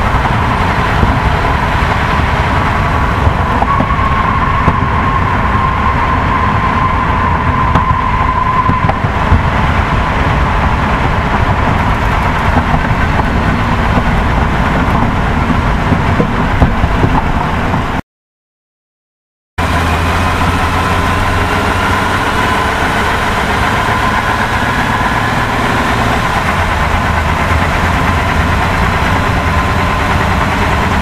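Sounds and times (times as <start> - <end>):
thin whine: 0.0 - 17.4
vehicle engine rumbling: 0.0 - 18.0, 19.6 - 31.0.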